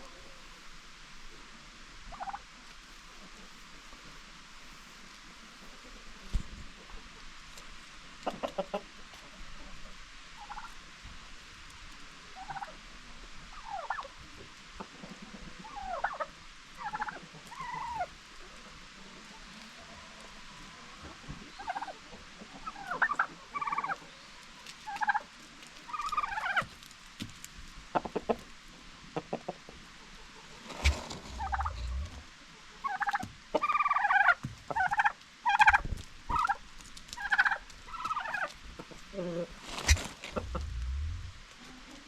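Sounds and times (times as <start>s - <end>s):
turkeys gobbling: 2.1s - 7.1s, 8.2s - 9.2s, 10.4s - 10.8s, 12.4s - 12.8s, 13.5s - 14.1s, 14.8s - 26.8s, 27.9s - 28.5s, 29.1s - 41.7s.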